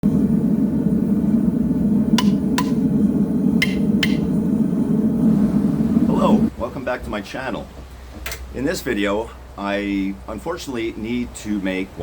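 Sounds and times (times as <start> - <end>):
low rumbling noise: 0.0 - 7.8.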